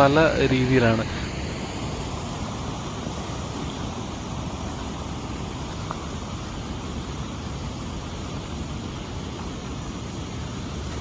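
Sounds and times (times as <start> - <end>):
stream water rushing over rocks: 0.0 - 11.0.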